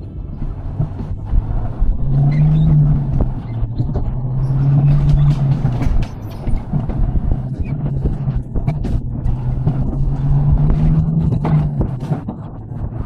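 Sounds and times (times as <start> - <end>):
coaster cart rumbling on track: 0.0 - 13.0
steady low hum: 0.0 - 13.0.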